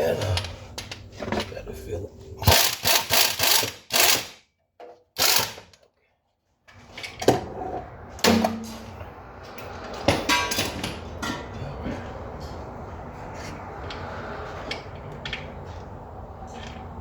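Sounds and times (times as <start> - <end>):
wrench rattling on bolts: 2.4 - 4.4, 5.2 - 5.9.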